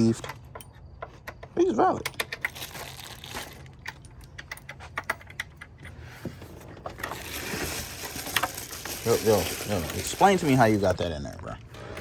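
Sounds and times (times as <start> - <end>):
small metal parts clinking: 0.0 - 5.9, 6.8 - 11.0.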